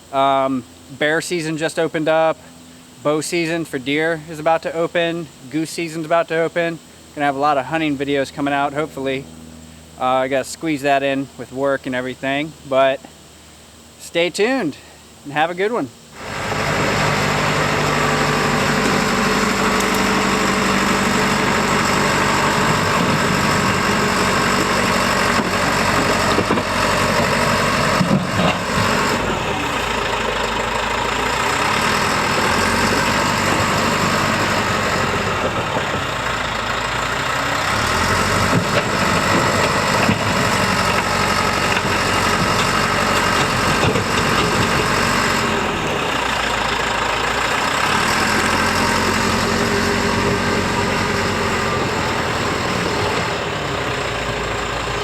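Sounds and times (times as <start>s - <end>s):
bulldozer engine running: 16.0s - 55.0s.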